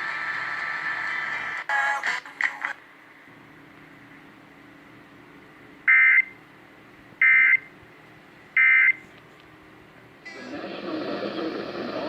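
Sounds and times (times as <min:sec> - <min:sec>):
faint radio hiss: 0:10.3 - 0:12.0.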